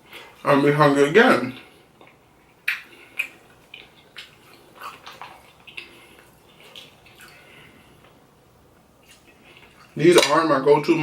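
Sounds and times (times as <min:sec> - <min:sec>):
wet eating smacks: 0:02.0 - 0:08.2.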